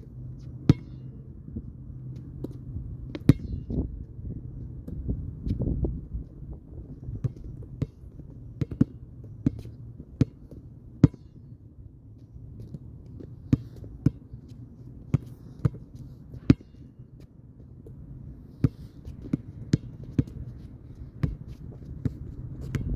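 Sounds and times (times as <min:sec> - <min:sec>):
basketball bouncing: 0:02.4 - 0:03.6, 0:07.2 - 0:11.3, 0:13.5 - 0:14.2, 0:18.6 - 0:20.4, 0:21.2 - 0:22.9.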